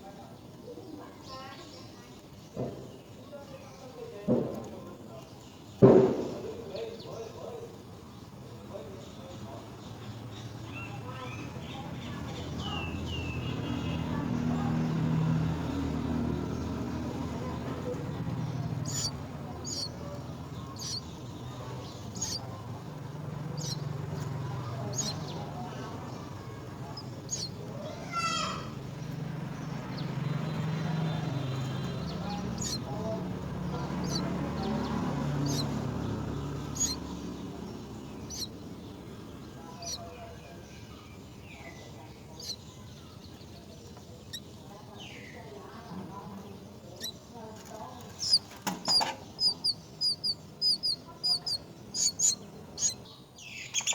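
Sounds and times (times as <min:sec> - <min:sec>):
chicks chirping: 0:10.4 - 0:53.9
low murmur: 0:11.1 - 0:53.1
steady low hum: 0:15.9 - 0:27.9.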